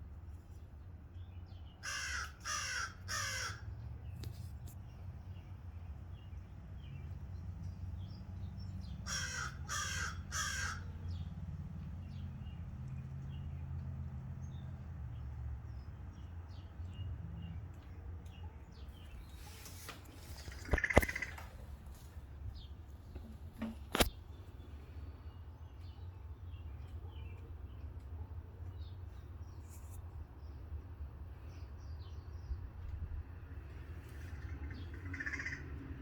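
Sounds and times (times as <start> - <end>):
crows cawing: 1.8 - 3.7, 9.0 - 10.9, 20.4 - 21.6, 34.6 - 35.8.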